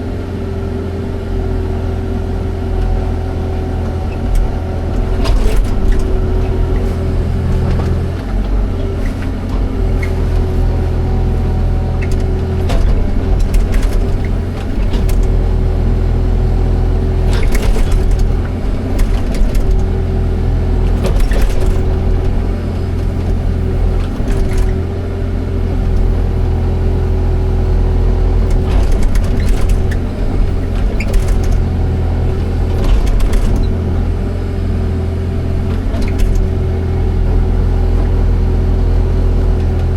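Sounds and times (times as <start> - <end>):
excavator diesel engine running: 0.0 - 39.9
machine clanks and knocks: 2.8 - 11.2, 11.8 - 15.7, 17.2 - 20.2, 20.8 - 25.2, 28.4 - 34.4.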